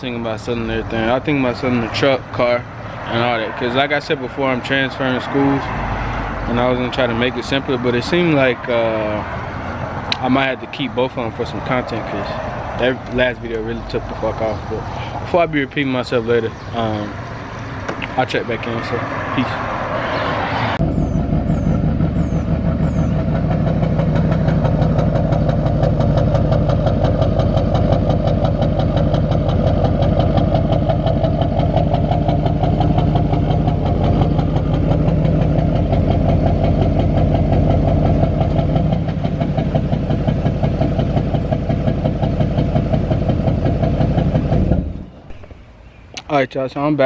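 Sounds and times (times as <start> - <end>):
diesel engine knocking: 20.8 - 45.6.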